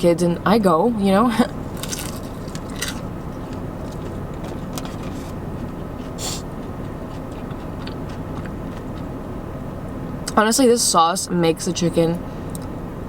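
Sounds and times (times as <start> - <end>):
steady low rumble: 0.0 - 13.0
person chewing food: 1.8 - 9.2.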